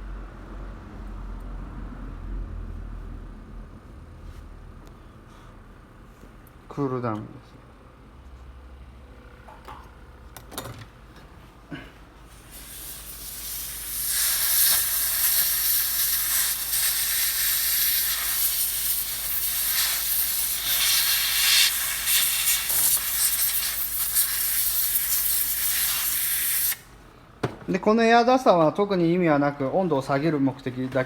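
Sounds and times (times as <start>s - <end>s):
compressed air duster hissing: 12.3s - 26.9s.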